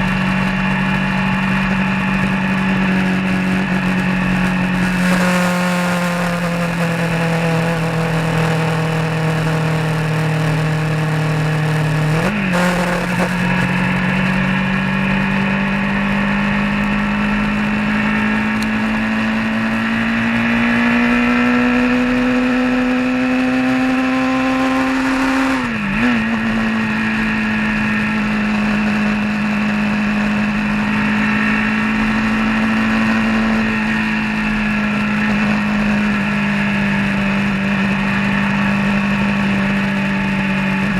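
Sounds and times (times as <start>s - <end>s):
vehicle engine running: 0.0s - 40.9s.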